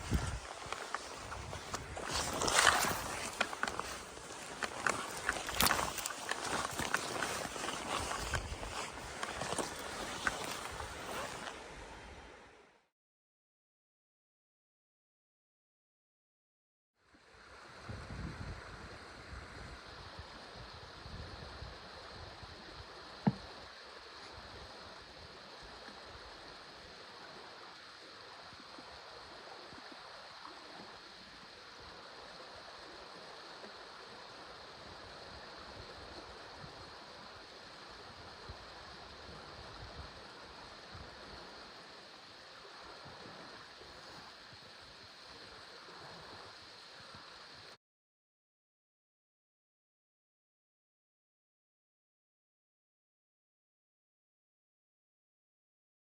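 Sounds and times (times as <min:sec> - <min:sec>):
running water: 0:00.0 - 0:12.5, 0:17.3 - 0:47.8.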